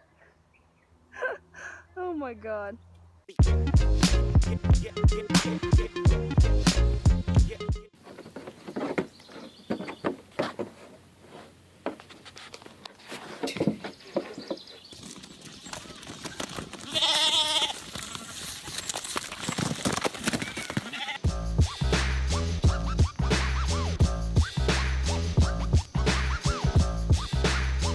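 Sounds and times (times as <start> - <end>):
rustling: 8.0 - 21.2
farm animal bleating: 16.8 - 18.6, 20.4 - 21.2.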